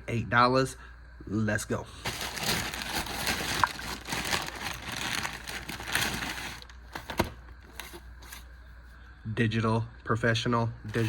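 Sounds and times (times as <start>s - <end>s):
packaging crinkling and rustling: 2.0s - 8.5s.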